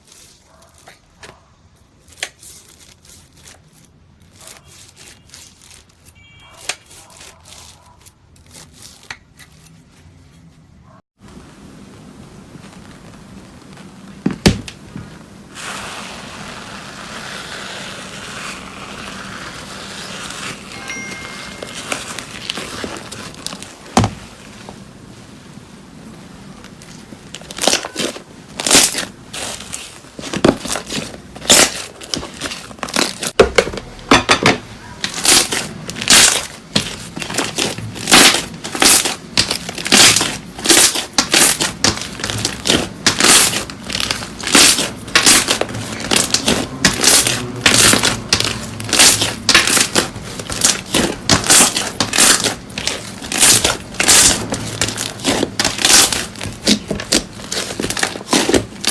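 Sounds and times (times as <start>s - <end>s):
crunchy slime crackling: 11.2s - 34.0s, 34.7s - 58.9s.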